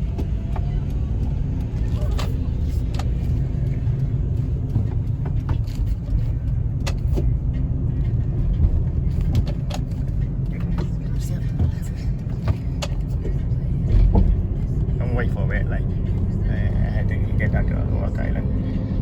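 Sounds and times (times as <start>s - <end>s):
car cabin engine and road rumble: 0.0s - 19.0s.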